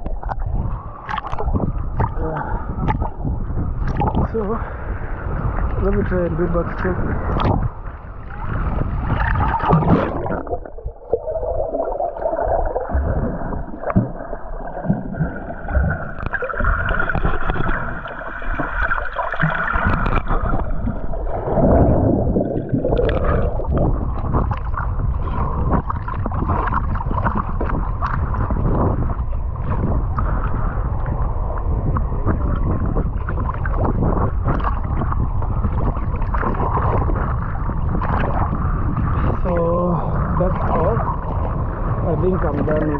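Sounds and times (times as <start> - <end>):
water splashing and gurgling: 0.0 - 42.9.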